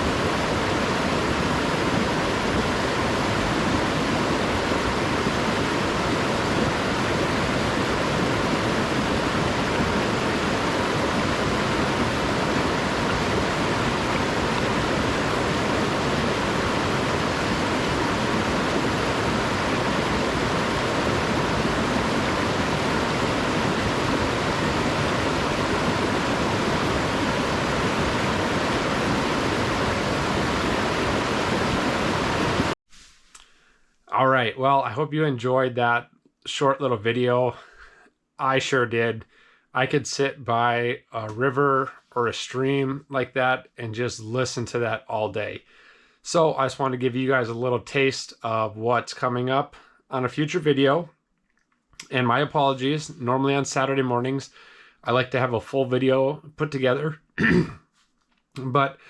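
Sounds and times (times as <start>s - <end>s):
river rushing over rocks: 0.0s - 32.8s.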